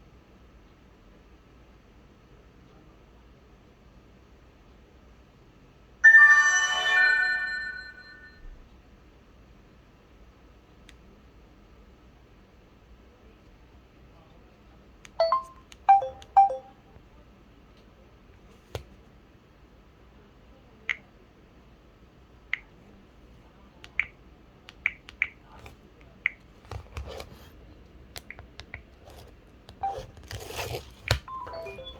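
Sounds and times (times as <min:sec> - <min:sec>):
short electronic beep tones: 0:06.0 - 0:08.4, 0:15.2 - 0:16.7, 0:31.3 - 0:31.9
rustling handling noise: 0:28.9 - 0:31.9
phone key clicks and tones: 0:31.1 - 0:31.9.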